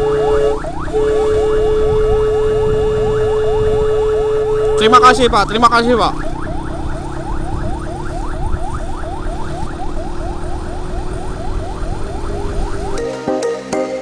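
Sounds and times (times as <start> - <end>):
electronic siren yelping: 0.0 - 13.3
road and wind rumble: 0.0 - 13.3
music: 12.9 - 14.0.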